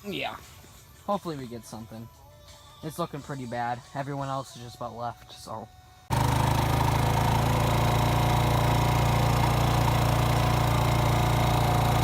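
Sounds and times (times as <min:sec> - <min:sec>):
small engine running: 0:06.1 - 0:12.0.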